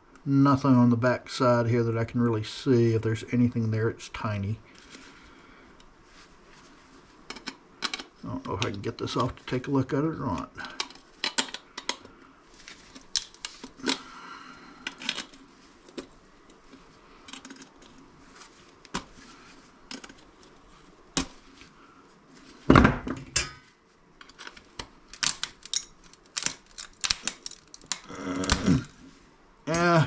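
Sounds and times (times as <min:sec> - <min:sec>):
plastic and metal clicking: 0:13.1 - 0:13.6, 0:25.2 - 0:28.9.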